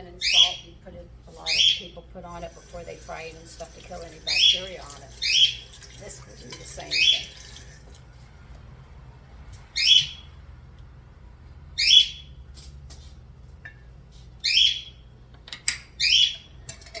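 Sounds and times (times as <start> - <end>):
bird calling: 0.2 - 0.7, 1.4 - 1.9, 9.8 - 10.3.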